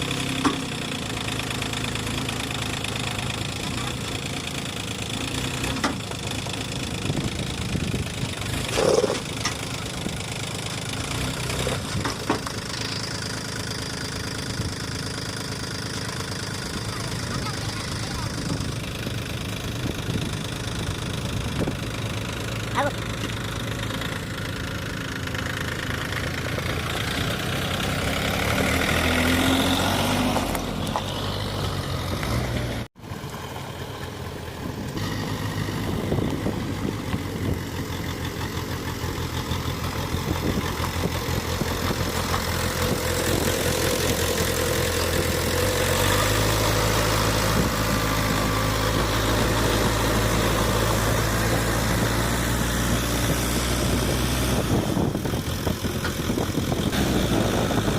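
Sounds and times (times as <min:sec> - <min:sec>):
diesel engines running: 0:00.0 - 0:57.9
heavy low rumble: 0:34.5 - 0:44.6.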